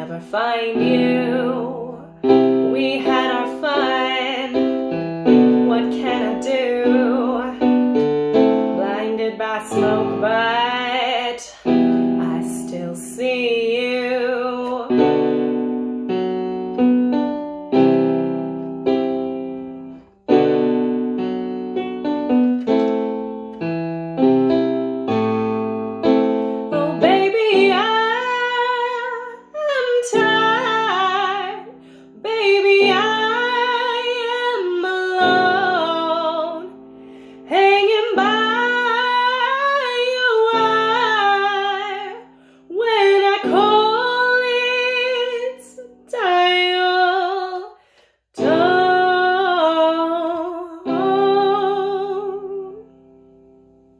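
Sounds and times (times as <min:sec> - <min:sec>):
woman singing: 0:00.0 - 0:15.7, 0:26.7 - 0:47.8, 0:48.4 - 0:52.9
piano chords: 0:00.0 - 0:47.6, 0:48.4 - 0:53.9.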